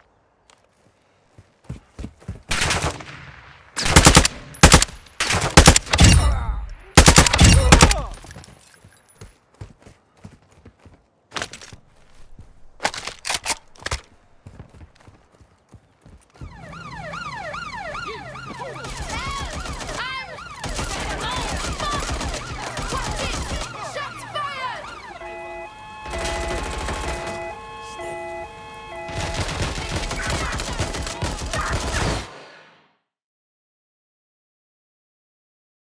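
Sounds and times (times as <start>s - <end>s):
gunshots: 2.5s - 8.4s, 16.6s - 25.4s, 26.1s - 28.3s, 29.0s - 32.8s
police sirens wailing: 5.7s - 8.2s, 16.4s - 31.9s.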